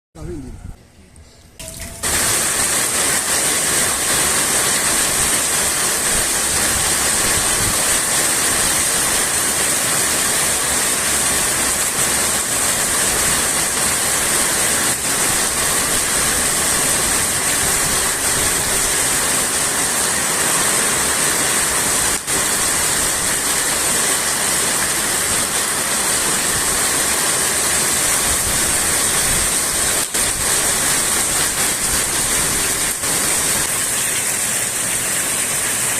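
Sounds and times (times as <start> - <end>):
heavy rain on a roof: 1.7 - 35.9.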